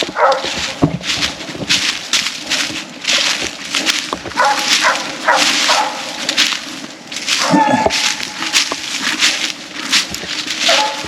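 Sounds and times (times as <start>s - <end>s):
footsteps crunching through dry leaves: 0.0s - 11.0s
dog barking: 0.1s - 0.6s, 4.4s - 6.2s, 7.4s - 7.9s, 10.6s - 11.0s.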